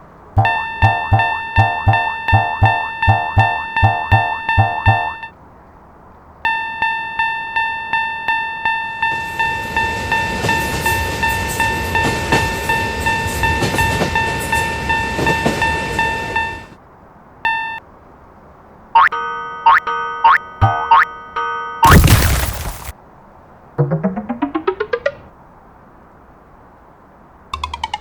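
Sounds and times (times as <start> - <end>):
train passing: 0.0 - 5.3, 6.5 - 16.8
falling-pitch cartoon sound effects: 0.4 - 5.3
railroad crossing warning bell: 0.4 - 5.3, 6.4 - 16.8, 17.5 - 17.8.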